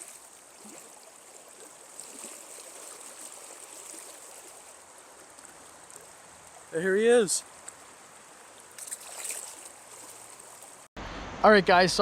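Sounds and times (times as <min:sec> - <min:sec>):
stream water rushing: 0:00.0 - 0:10.9.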